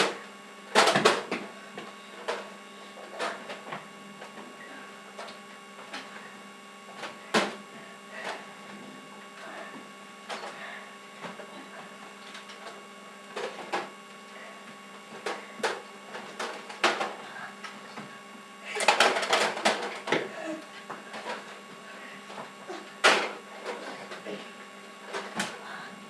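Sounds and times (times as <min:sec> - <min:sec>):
electrical hum: 0:00.0 - 0:26.0.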